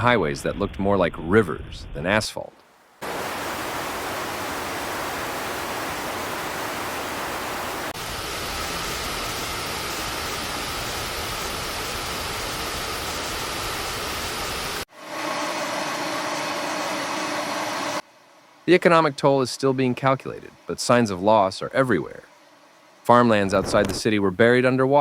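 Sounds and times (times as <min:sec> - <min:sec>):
steady hum: 0:02.7 - 0:25.0
floodwater rushing: 0:02.9 - 0:14.8.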